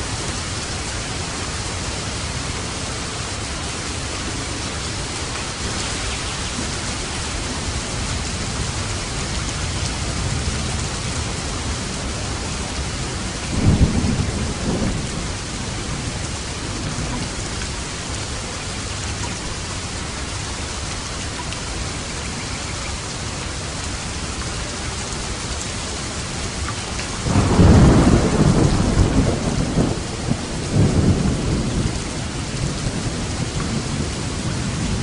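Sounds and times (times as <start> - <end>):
heavy rain on a roof: 0.0 - 35.0
thunder rumble: 4.0 - 17.6, 27.2 - 35.0.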